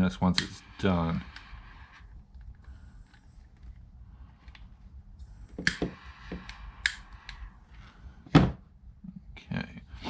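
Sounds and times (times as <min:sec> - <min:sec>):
faint hiss: 0:05.2 - 0:08.2.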